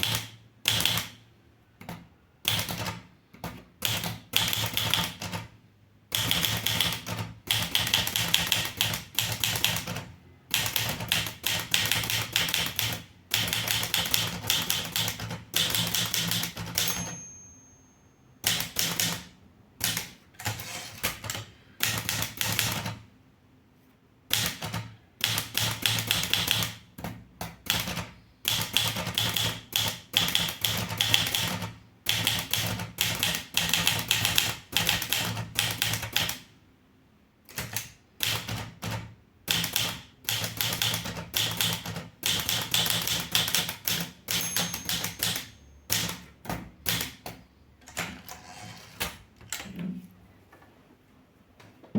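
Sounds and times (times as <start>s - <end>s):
manual typewriter key strikes: 6.2s - 17.4s, 18.4s - 23.0s, 39.5s - 47.3s.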